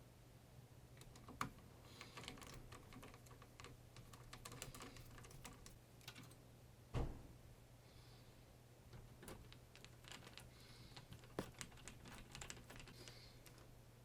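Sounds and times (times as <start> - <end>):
loud thump: 6.9 - 7.3.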